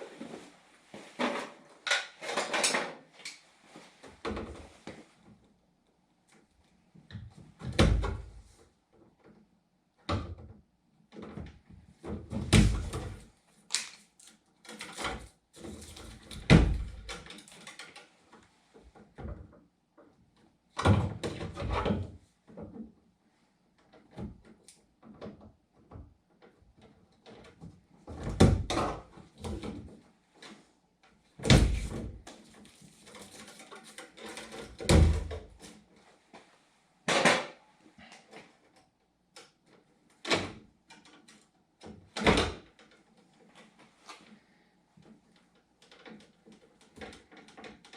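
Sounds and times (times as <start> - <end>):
clattering and rustling: 0.0 - 5.4, 31.6 - 38.8.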